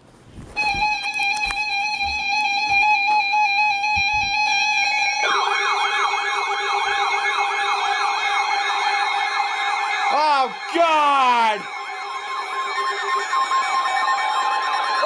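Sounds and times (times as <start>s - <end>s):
warbling siren wail: 1.8s - 15.0s.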